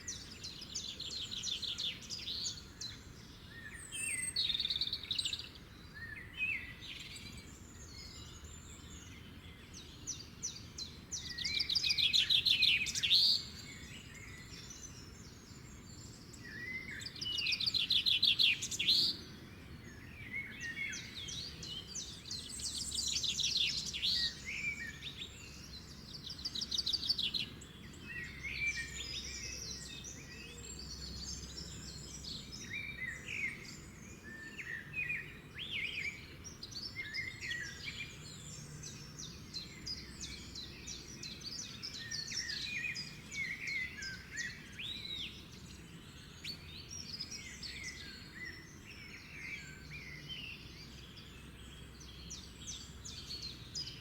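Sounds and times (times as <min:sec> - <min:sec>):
songbirds singing trilled phrases: 0:00.0 - 0:54.0.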